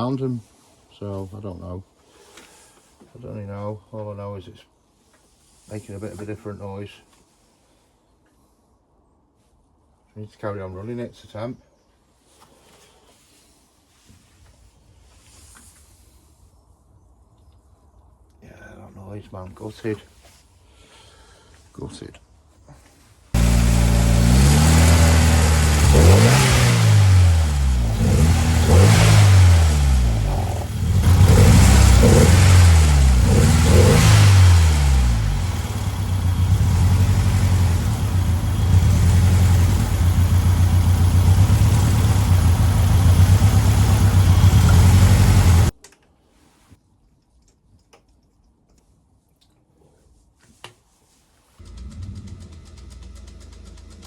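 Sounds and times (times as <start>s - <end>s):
car engine revving and idling: 23.4s - 45.7s, 51.6s - 54.0s.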